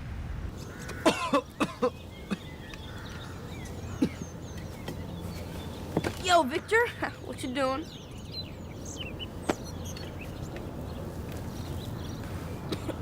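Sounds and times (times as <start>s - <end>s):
person coughing: 1.0s - 2.4s, 12.7s - 13.0s.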